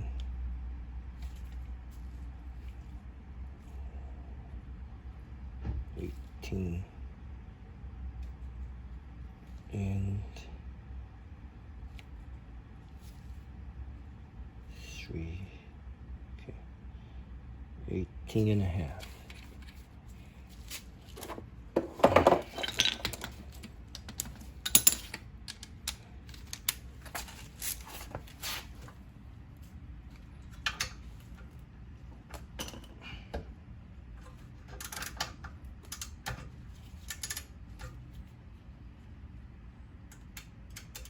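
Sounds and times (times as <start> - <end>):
metallic clicks of hand tools: 40.1 - 41.0.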